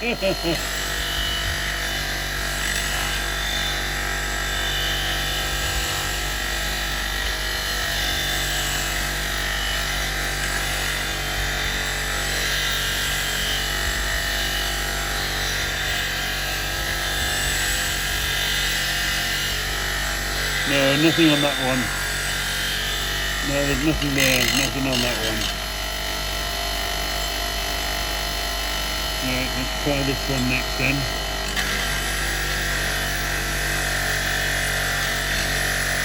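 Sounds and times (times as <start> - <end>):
wire brush wheel scrubbing metal: 0.0 - 36.0.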